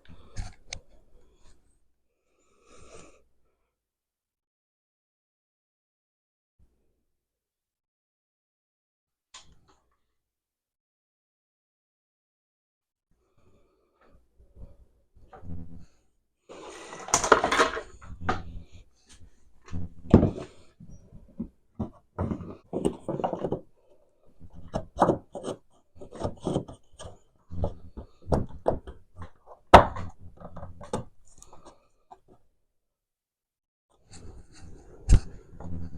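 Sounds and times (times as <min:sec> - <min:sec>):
wooden pieces knocking and scraping: 0:16.6 - 0:18.5, 0:20.1 - 0:23.8, 0:24.5 - 0:32.4.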